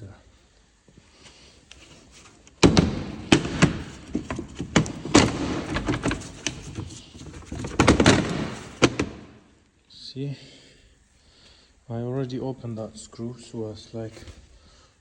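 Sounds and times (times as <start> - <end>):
knocks taps and rattling: 1.8 - 9.4.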